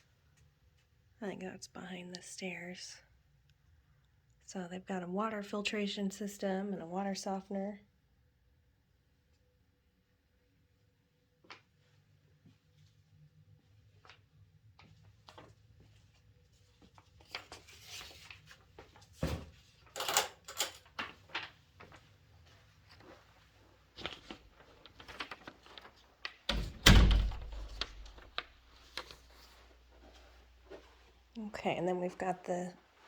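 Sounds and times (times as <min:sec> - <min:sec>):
door thunk: 0:26.5 - 0:28.0
shuffling footsteps: 0:28.0 - 0:31.4.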